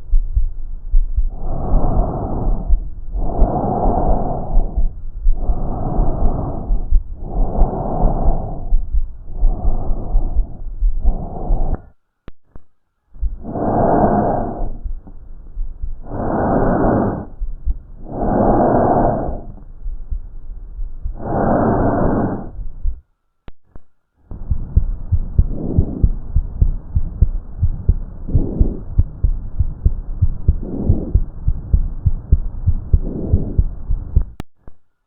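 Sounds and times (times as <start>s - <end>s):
fast regular heartbeat: 0.0s - 11.9s, 13.1s - 23.0s, 24.3s - 34.4s
breaths through stethoscope: 1.3s - 12.0s, 13.2s - 15.2s, 16.0s - 19.7s, 21.0s - 23.0s, 29.8s - 34.4s.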